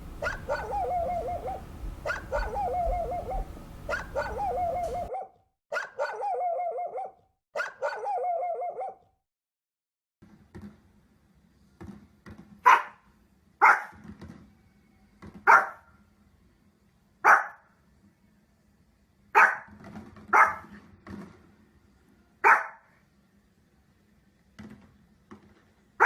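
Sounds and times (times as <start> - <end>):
dog barking: 0.0 - 9.1, 12.6 - 13.0, 13.6 - 14.0, 15.4 - 15.9, 17.2 - 17.7, 19.4 - 19.7, 20.3 - 20.8, 22.4 - 22.9
faint dog yips: 0.2 - 9.1, 13.6 - 14.0, 15.5 - 15.8, 20.4 - 20.7.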